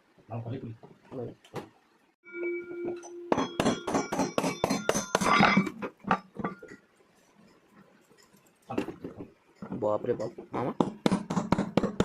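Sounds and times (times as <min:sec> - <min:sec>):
metallic knocks with ringing: 0:02.3 - 0:06.9.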